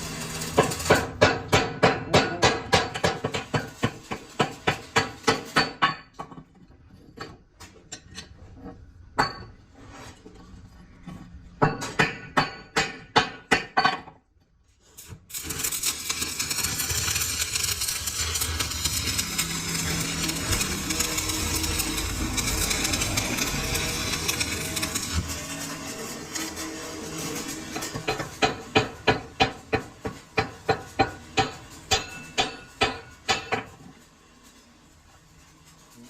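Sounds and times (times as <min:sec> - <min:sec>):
dense machine noise: 0:00.0 - 0:01.3, 0:15.3 - 0:33.4
hammer striking metal: 0:00.6 - 0:06.2, 0:11.6 - 0:14.1, 0:27.7 - 0:33.8.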